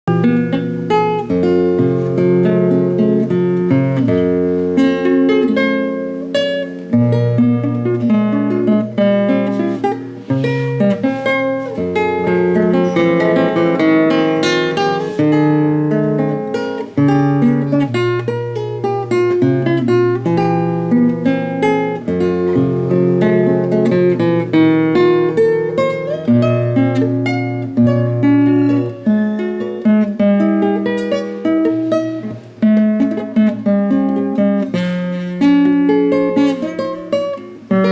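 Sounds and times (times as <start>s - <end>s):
classical guitar fingerstyle: 0.0s - 37.9s.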